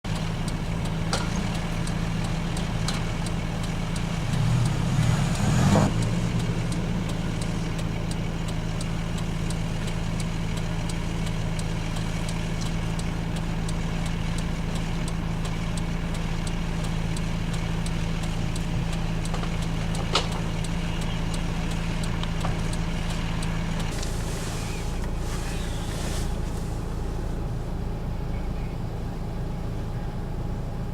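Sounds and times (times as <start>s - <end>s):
vehicle engine idling: 0.0s - 30.9s
faint clicks: 0.1s - 24.1s.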